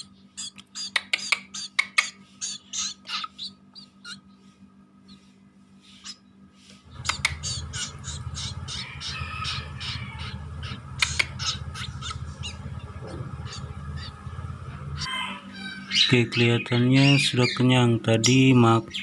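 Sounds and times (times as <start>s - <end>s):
bird nestling begging squawks: 0.0s - 4.3s, 6.9s - 19.0s
steady low rumble: 6.9s - 15.1s
sharp clicks: 7.0s - 7.4s, 11.0s - 11.4s.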